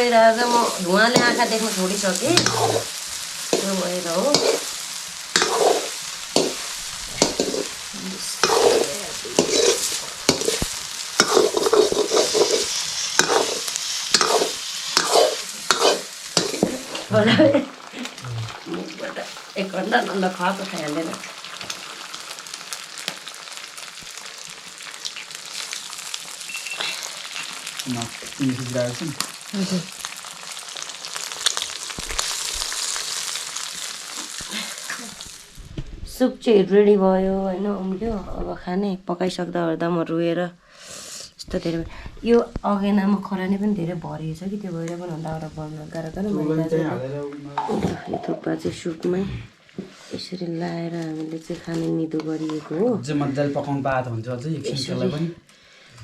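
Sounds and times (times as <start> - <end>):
stirring scraping against pan: 0.0 - 35.4, 49.7 - 54.0
food sizzling in a wok: 0.0 - 38.0, 40.8 - 56.0
wood fire crackles: 0.0 - 38.8, 41.4 - 56.0.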